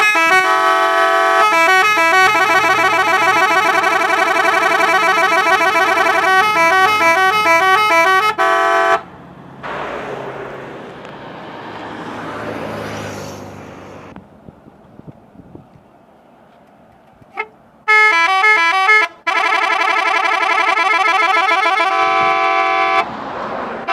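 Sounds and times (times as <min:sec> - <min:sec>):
bus horn playing a warbling tune: 0:00.0 - 0:09.1, 0:17.3 - 0:23.1
steady rushing noise: 0:09.6 - 0:13.2.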